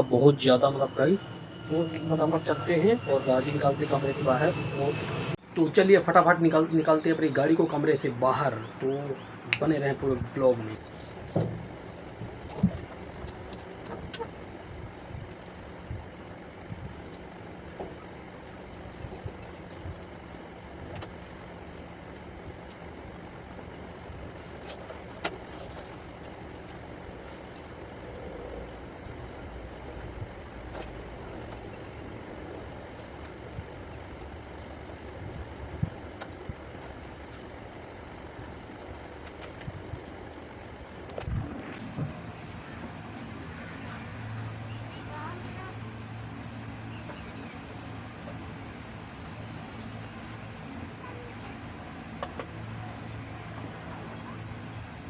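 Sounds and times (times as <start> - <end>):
motor vehicle noise: 0.0 - 55.0.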